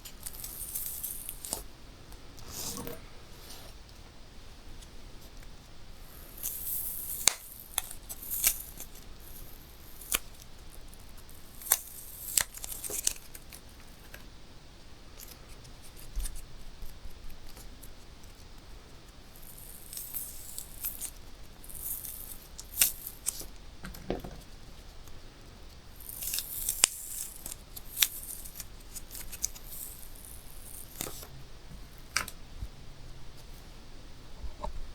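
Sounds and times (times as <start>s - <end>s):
rubbery rustle and hiss: 25.9s - 31.4s.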